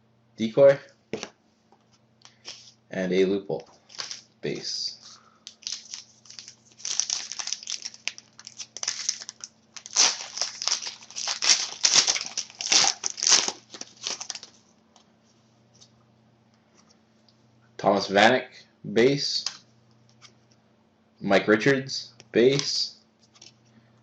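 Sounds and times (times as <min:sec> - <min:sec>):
wrapper crinkling and tearing: 0:03.8 - 0:04.3, 0:05.4 - 0:14.6.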